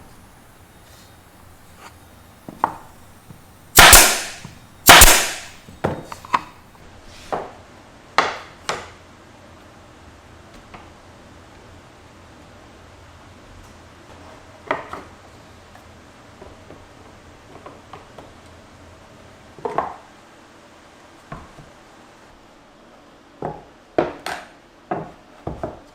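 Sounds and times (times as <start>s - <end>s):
sharp woodworking strikes: 3.8s - 6.4s.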